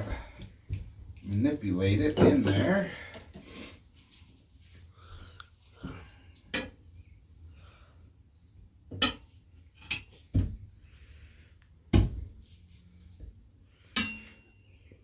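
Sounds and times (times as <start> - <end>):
tire knocks and thumps: 10.3 - 10.8, 11.9 - 12.4.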